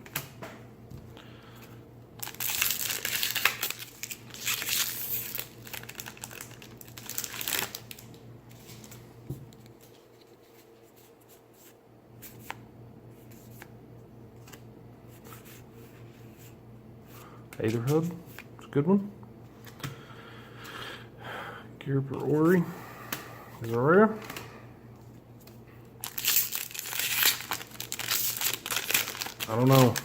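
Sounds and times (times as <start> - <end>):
foil wrapper crinkling and tearing: 2.2 - 9.0, 26.0 - 30.0.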